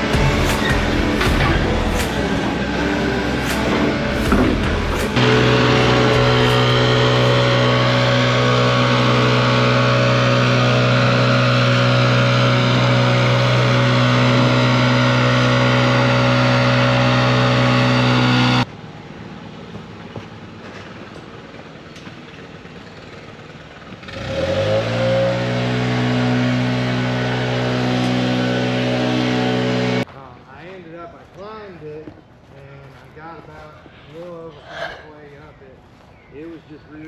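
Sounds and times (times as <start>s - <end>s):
engine revving up: 0.0s - 18.7s, 24.0s - 30.1s
engine running at high revs: 0.0s - 18.9s, 19.7s - 30.1s.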